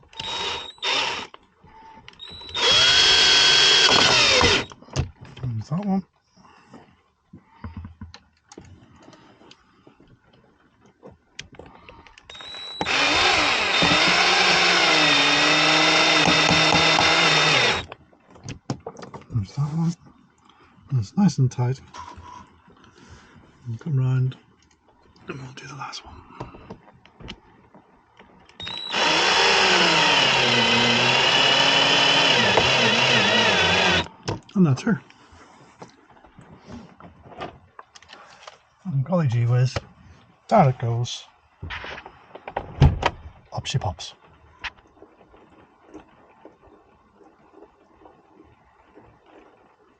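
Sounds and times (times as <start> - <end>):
electric drill driving a screw: 0.0 - 1.4, 2.2 - 4.7, 12.3 - 17.9, 28.6 - 34.1.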